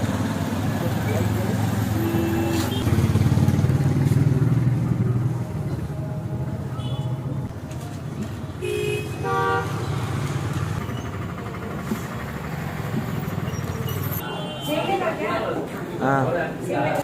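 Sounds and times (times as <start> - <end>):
low engine drone of traffic: 0.0 - 17.0
vehicle horn honks: 2.0 - 2.9, 8.6 - 9.9.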